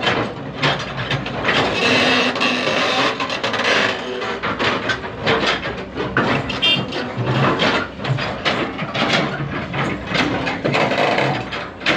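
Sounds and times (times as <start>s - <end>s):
metal clanks and knocks: 0.0s - 11.9s
excavator engine running: 4.3s - 11.9s.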